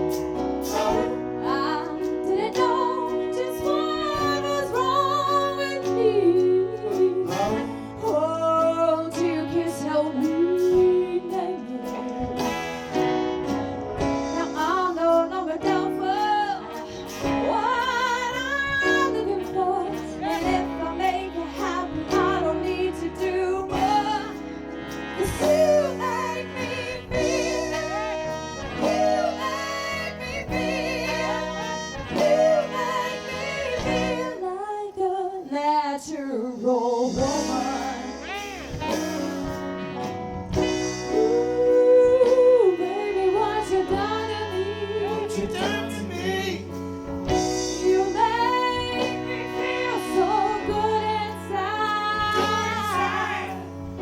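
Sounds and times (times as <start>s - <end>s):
soul band with horns: 0.0s - 54.0s
person singing lead: 25.2s - 35.6s, 36.2s - 39.4s.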